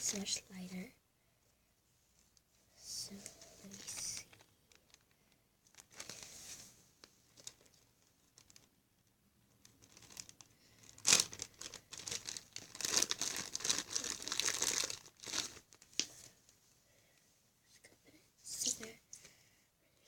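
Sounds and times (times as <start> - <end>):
slime crackling when stretched: 9.6 - 16.1.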